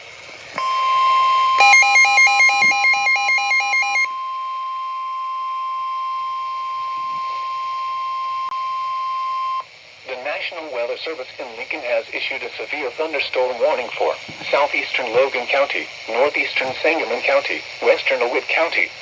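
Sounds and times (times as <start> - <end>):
alternating two-note beeping: 0.6 - 6.3
steady alarm tone: 0.6 - 9.7.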